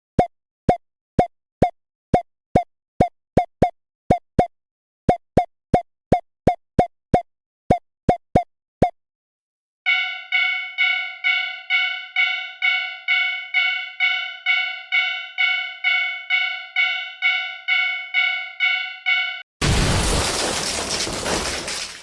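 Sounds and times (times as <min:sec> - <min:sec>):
railroad crossing alarm: 0:09.9 - 0:19.5.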